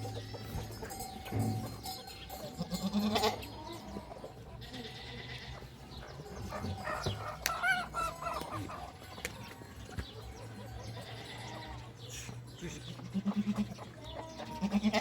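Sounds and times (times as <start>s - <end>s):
goats bleating: 2.6s - 5.7s, 10.9s - 12.0s, 12.6s - 15.0s.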